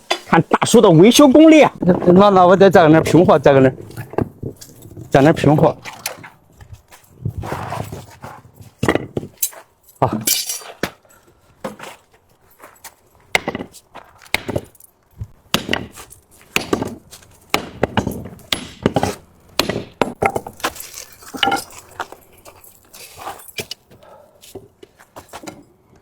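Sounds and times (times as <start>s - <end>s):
sledgehammer striking steel: 15.5s - 20.6s.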